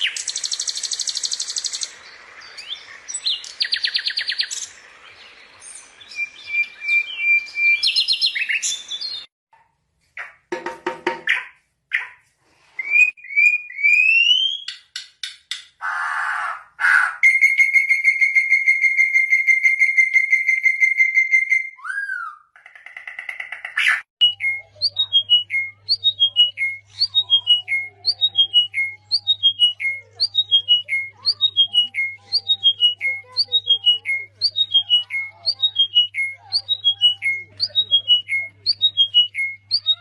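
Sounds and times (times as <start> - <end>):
songbird whistling: 0.0 - 1.9, 2.6 - 4.7, 6.0 - 9.3, 12.8 - 14.8, 17.2 - 22.5, 24.2 - 40.0.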